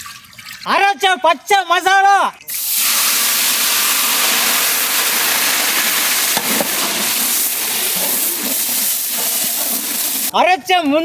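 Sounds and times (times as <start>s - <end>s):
paste sizzling in hot oil: 2.5s - 10.3s.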